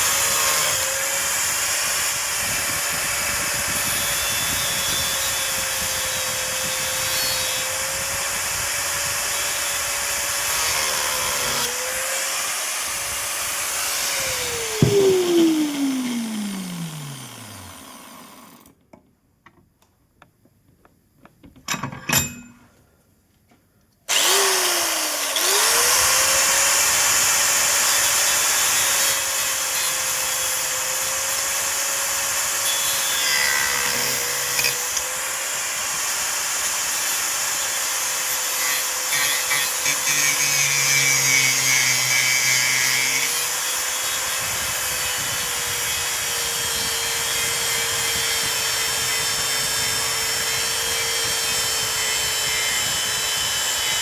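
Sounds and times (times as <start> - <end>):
angle grinder whining: 0.0 - 18.8, 24.1 - 54.0
sharp knocks: 14.7 - 15.4.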